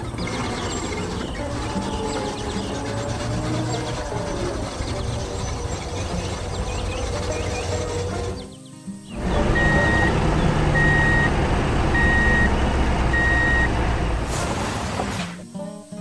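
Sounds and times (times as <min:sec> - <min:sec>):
engine low rumble: 0:00.0 - 0:08.5, 0:09.1 - 0:15.3
reversing alarm beeping: 0:09.2 - 0:14.4.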